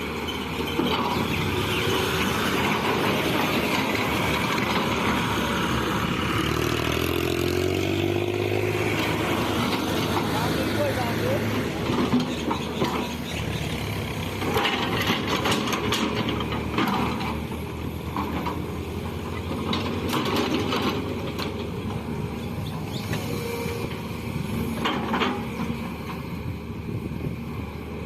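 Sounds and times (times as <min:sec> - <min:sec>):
excavator diesel engine running: 0:00.0 - 0:28.0.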